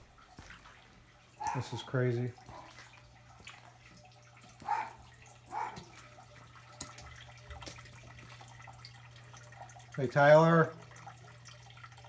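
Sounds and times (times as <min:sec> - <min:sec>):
splashing steps in shallow water: 0:00.0 - 0:08.5.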